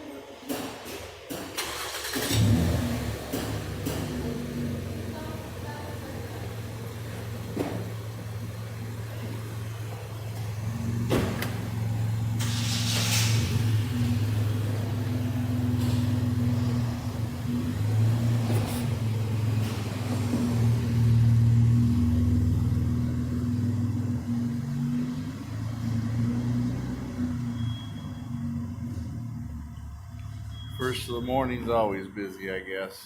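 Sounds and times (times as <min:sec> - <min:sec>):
car engine idling: 0:01.6 - 0:32.5
short hiss: 0:12.4 - 0:13.6.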